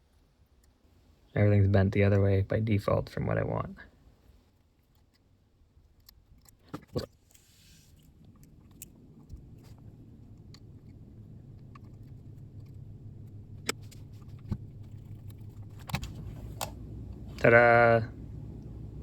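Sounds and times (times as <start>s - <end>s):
low hum: 7.6s - 19.0s.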